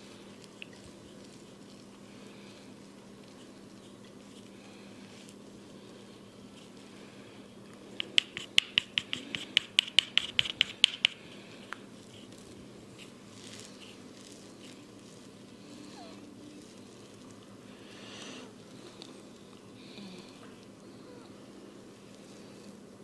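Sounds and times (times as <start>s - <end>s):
hands tapping head: 8.0s - 11.8s
hands rubbing scalp: 8.0s - 15.6s.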